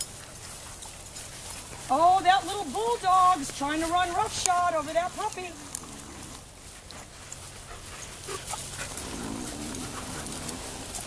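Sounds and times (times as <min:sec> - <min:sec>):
dog panting: 0:03.0 - 0:11.0.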